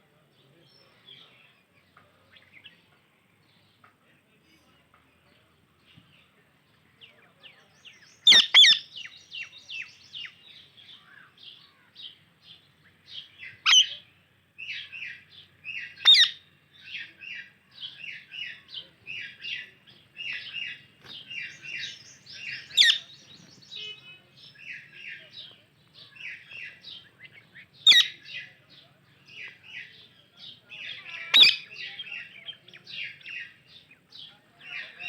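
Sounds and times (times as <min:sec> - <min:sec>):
parrots chirping: 0:08.2 - 0:10.4, 0:13.4 - 0:14.0, 0:14.7 - 0:16.4, 0:18.1 - 0:23.9, 0:26.2 - 0:28.3, 0:30.9 - 0:32.3.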